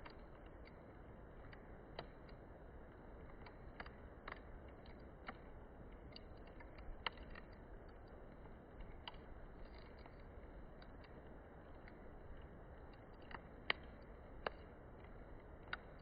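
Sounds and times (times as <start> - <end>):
wood fire crackling and popping: 0.0 - 16.0.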